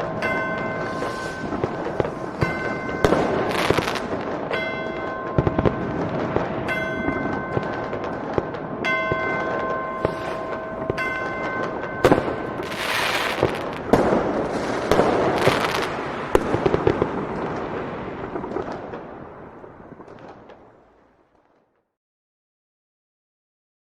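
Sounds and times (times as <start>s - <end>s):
bell-like ringing tone: 0.0s - 6.0s, 8.8s - 13.9s
fireworks crackling and banging: 0.0s - 21.9s.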